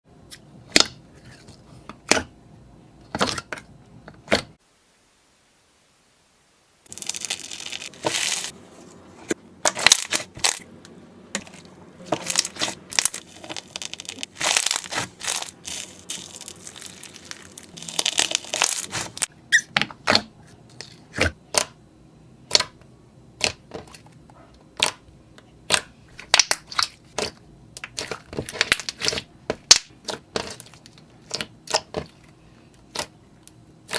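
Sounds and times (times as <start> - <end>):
slime squishing: 6.9 - 10.7, 11.4 - 20.2, 25.6 - 33.9.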